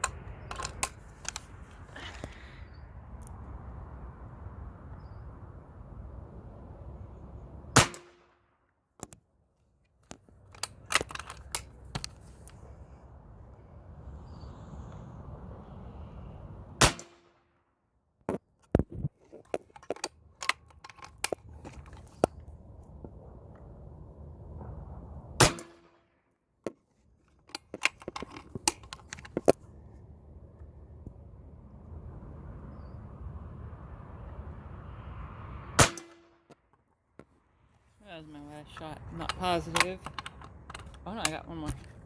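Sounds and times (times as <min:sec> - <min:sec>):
air rifle shots: 0:00.0 - 0:01.4, 0:07.8 - 0:08.3, 0:16.8 - 0:17.2, 0:25.4 - 0:25.9, 0:35.8 - 0:36.3
rifle action clicking: 0:00.0 - 0:01.5, 0:10.5 - 0:12.2, 0:19.5 - 0:22.1, 0:27.5 - 0:29.6, 0:39.2 - 0:41.9.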